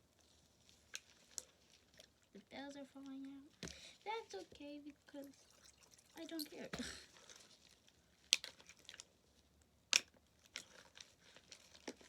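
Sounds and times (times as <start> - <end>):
soft crackling: 0.0 - 9.4.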